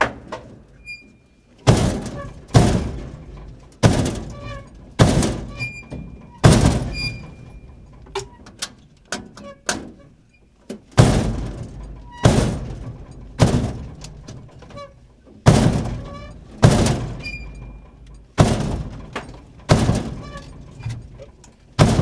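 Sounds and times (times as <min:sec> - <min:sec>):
dumpster door slamming: 0:01.6 - 0:08.5, 0:10.9 - 0:22.0.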